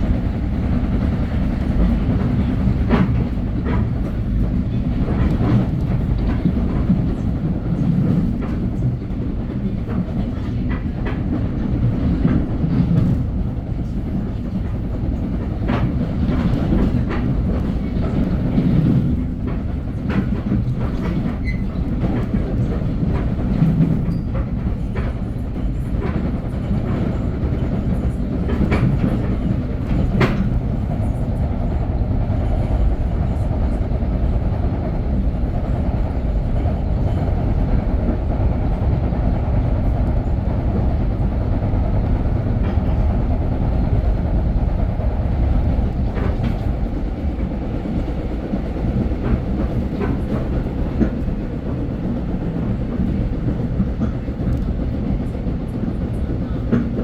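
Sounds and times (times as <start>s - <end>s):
train rumbling on track: 0.0s - 57.0s.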